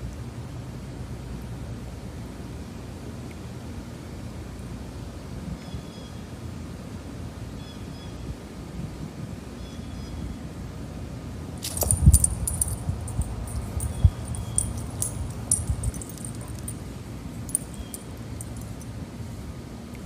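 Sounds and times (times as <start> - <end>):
metallic jingling and clicking: 11.6 - 19.0
steady low rumble: 11.6 - 19.4.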